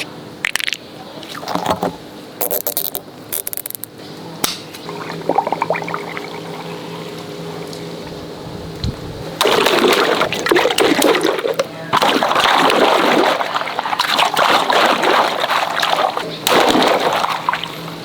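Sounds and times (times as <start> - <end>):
rubber squishing: 1.3 - 3.9
water splashing out: 9.4 - 18.0.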